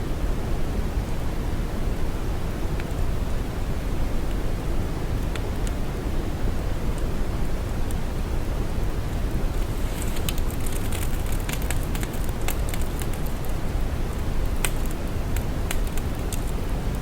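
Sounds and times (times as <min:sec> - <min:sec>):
deep steady hiss: 0:00.0 - 0:17.0
soft crackles and clicks: 0:09.2 - 0:17.0.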